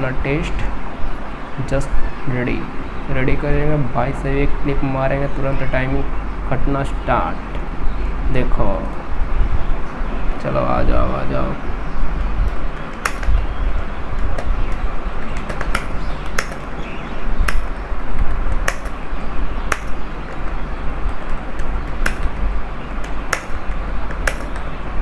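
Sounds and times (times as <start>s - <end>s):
steady low hum: 0.0s - 25.0s
keyboard keystrokes clacking: 12.7s - 13.4s, 14.2s - 16.8s, 17.4s - 19.0s, 19.6s - 24.8s.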